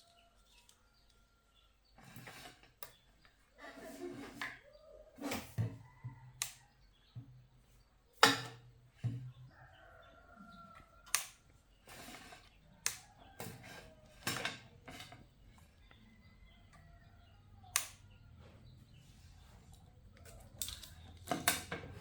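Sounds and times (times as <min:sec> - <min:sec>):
sharp clicks and knocks of tools: 0:11.0 - 0:11.4, 0:17.7 - 0:18.0.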